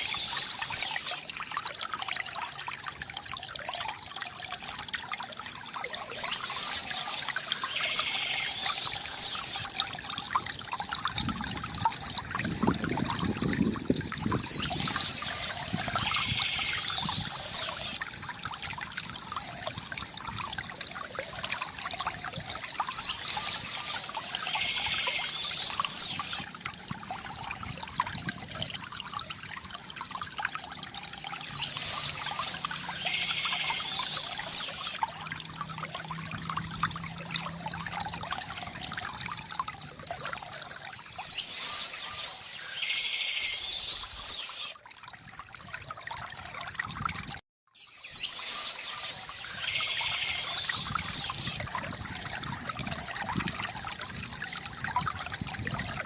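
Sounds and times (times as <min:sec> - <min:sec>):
deep water gurgle: 0:00.0 - 0:47.4, 0:48.0 - 0:56.0
stream trickling and pouring: 0:00.0 - 0:56.0.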